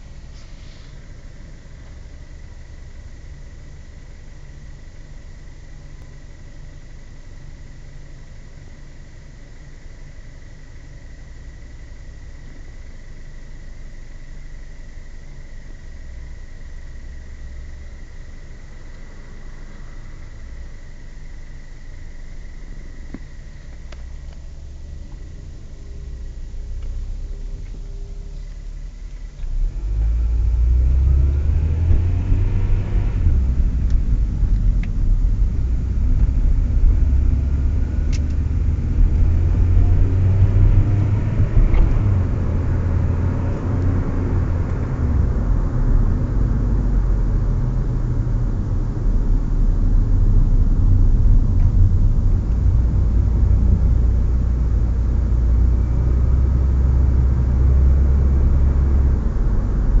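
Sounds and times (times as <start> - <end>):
car driving with low rumble: 0.0 - 60.0
thin high engine whine: 0.0 - 60.0.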